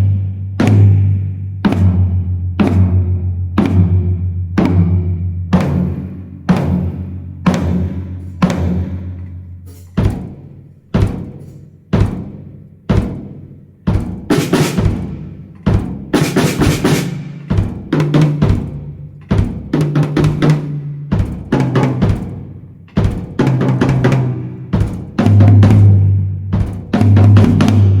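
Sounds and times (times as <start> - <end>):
heavy drum strikes: 0.0 - 28.0
cymbal wash: 8.1 - 10.4.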